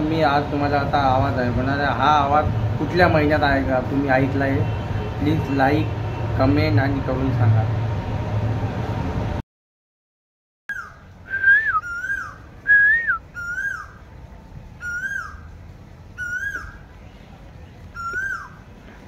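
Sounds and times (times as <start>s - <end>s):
bird whistling calls: 10.7s - 14.0s, 14.8s - 15.5s, 16.2s - 16.9s, 17.9s - 18.6s.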